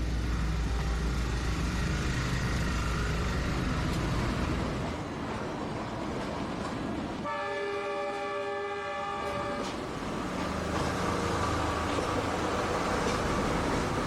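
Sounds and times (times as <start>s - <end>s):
train horn blast: 0.6s - 1.3s, 7.2s - 9.8s.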